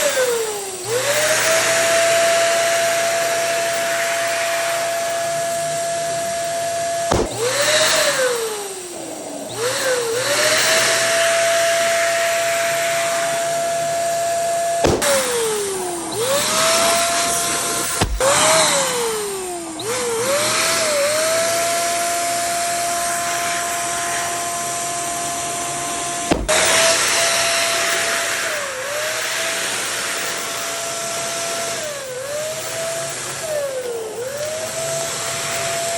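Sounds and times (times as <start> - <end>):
electric air pump whining: 0.0 - 35.9
sharp snaps: 7.1 - 8.1, 14.8 - 16.7, 26.3 - 26.8.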